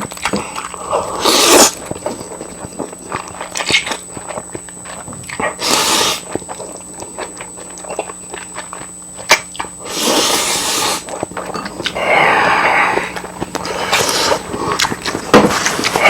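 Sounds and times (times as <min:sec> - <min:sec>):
wet chewing clicks: 0:01.5 - 0:09.8.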